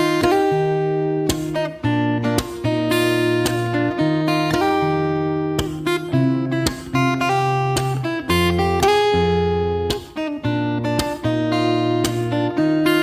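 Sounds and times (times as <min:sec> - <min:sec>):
strummed acoustic guitar: 0:00.0 - 0:13.0.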